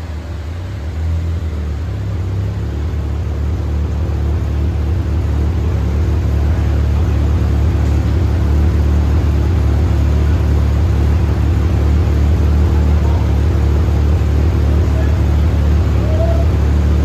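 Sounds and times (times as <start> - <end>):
car engine low rumble: 0.0 - 17.0.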